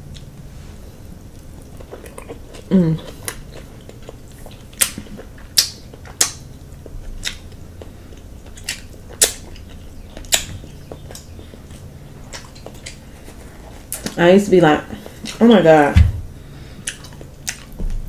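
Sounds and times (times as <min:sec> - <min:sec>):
crab shells clicking and snapping: 0:03.2 - 0:07.7.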